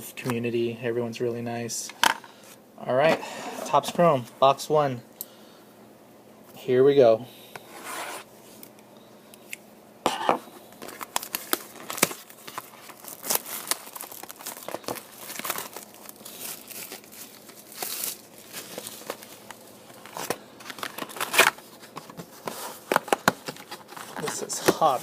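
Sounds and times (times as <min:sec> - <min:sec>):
plastic wrap tearing and crinkling: 0:10.8 - 0:22.0.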